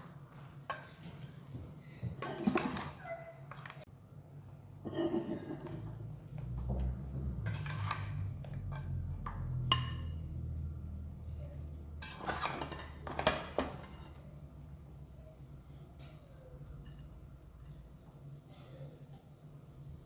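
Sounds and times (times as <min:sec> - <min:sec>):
spoon scraping against a pot: 0:07.4 - 0:10.3, 0:12.0 - 0:13.2.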